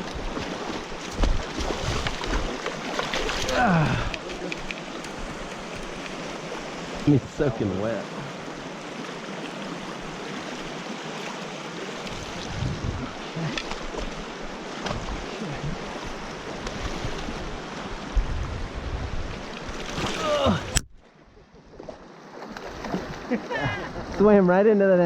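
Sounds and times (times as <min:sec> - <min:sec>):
river water rushing: 0:00.0 - 0:20.8.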